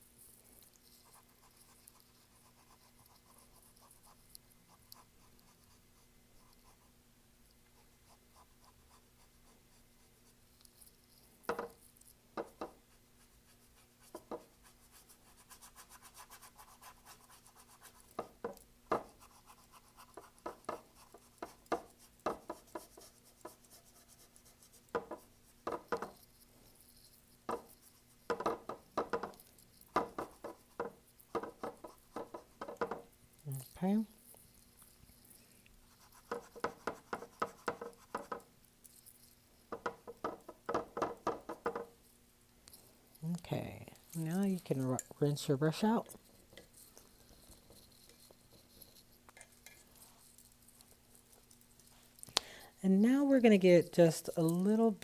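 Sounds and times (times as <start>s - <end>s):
paintbrush strokes on canvas: 19.0s - 28.4s, 33.5s - 39.3s.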